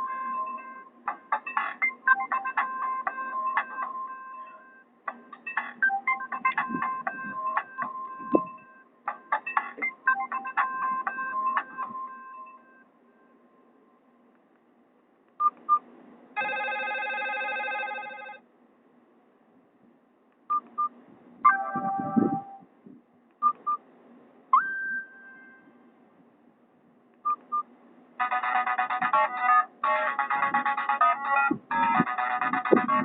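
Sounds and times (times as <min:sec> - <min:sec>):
electronic ringtone snippets: 0:00.0 - 0:12.8, 0:16.4 - 0:18.4, 0:21.5 - 0:22.6, 0:28.2 - 0:33.0
mobile phone keypad beeps: 0:23.4 - 0:23.8, 0:27.2 - 0:27.6.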